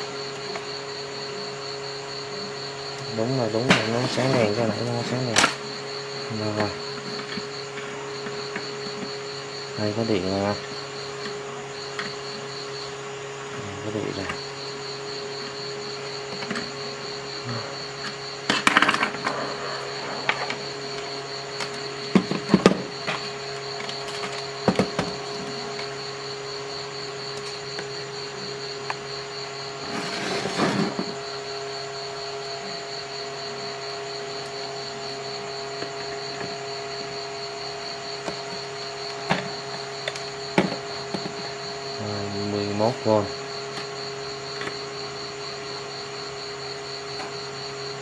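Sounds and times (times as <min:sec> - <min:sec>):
high pulsing whine: 0:00.0 - 0:48.0
steady hum: 0:00.0 - 0:48.0
rustling scrape: 0:29.8 - 0:31.1.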